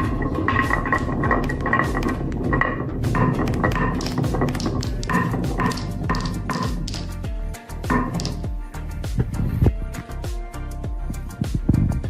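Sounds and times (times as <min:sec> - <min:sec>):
marbles clattering down wooden run: 0:00.0 - 0:07.1.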